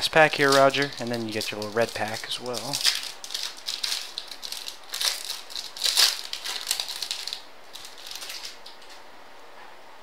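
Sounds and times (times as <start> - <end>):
foil wrapper tearing and crinkling: 0.0 - 9.0.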